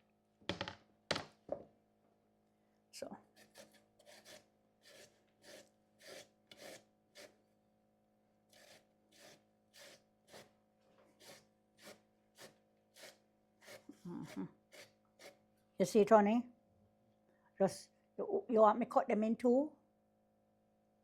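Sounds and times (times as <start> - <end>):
potatoes grated on metal grater: 3.3 - 7.4, 8.5 - 10.5, 11.2 - 15.4.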